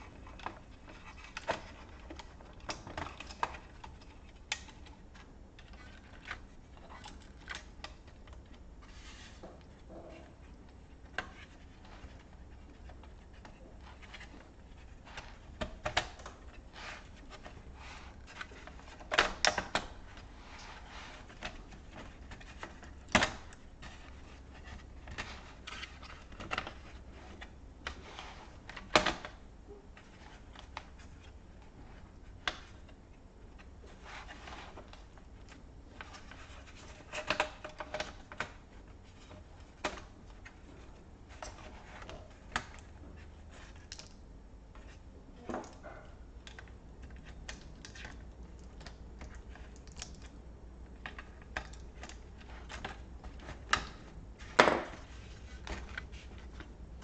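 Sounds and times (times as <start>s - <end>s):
laptop parts clicking and tapping: 43.6s - 44.2s, 46.4s - 56.7s.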